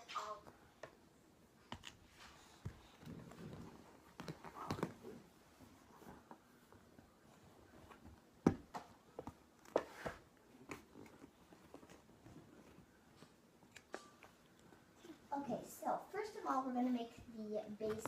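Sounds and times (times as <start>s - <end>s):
soft rustle: 1.9s - 8.4s, 9.1s - 13.7s.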